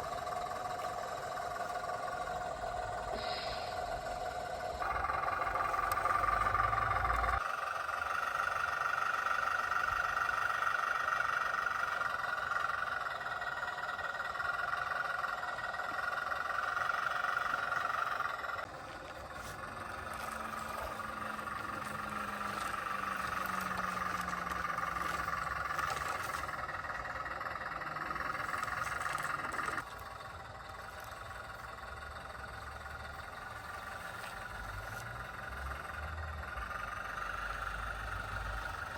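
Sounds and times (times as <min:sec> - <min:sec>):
low tone sliding downward: 0:00.0 - 0:07.4, 0:17.4 - 0:38.9
small electric motors whining: 0:00.0 - 0:38.9.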